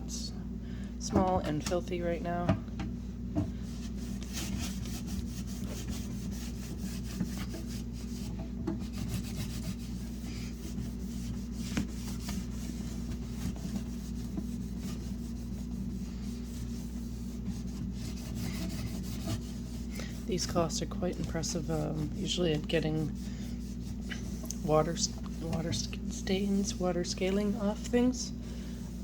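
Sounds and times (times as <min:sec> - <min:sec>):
cloth rubbing strokes: 0:03.6 - 0:29.0.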